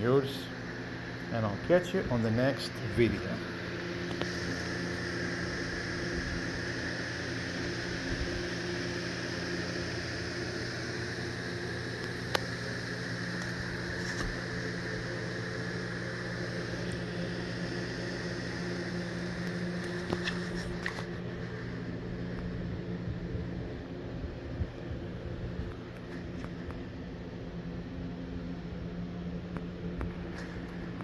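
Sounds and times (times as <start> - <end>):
electric motor whirring: 1.0 - 22.9.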